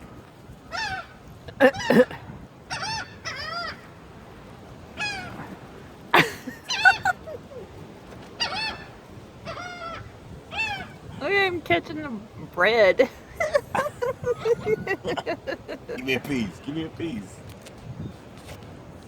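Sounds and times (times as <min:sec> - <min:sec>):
birds squawking: 0:00.7 - 0:02.1, 0:02.7 - 0:04.0, 0:04.9 - 0:05.6, 0:06.2 - 0:11.1.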